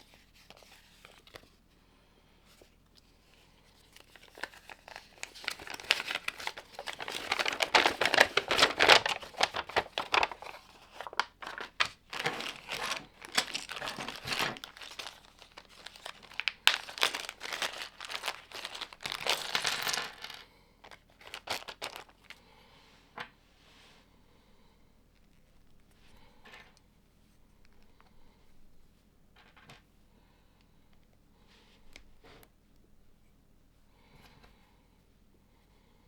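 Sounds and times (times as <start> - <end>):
plastic bricks clattering: 11.2 - 20.4.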